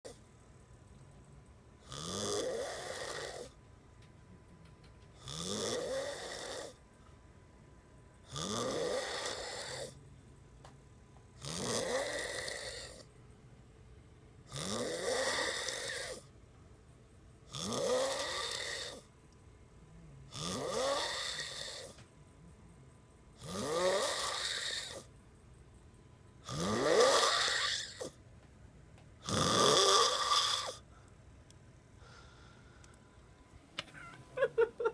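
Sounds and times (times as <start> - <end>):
quiet breaths: 0.1 - 26.6, 30.2 - 34.2
person snoring: 1.8 - 3.6, 5.2 - 6.8, 8.3 - 10.0, 11.4 - 13.1, 14.5 - 16.3, 17.5 - 19.1, 20.3 - 22.0, 23.4 - 25.1, 26.4 - 28.2, 29.2 - 30.9.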